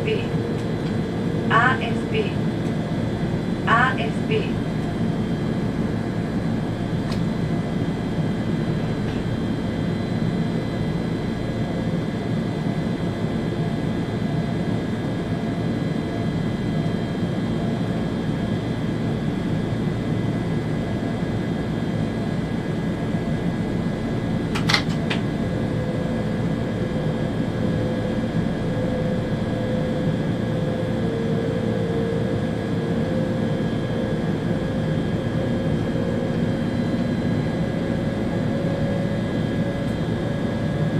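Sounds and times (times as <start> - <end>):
sharp click: 24.6 - 25.2.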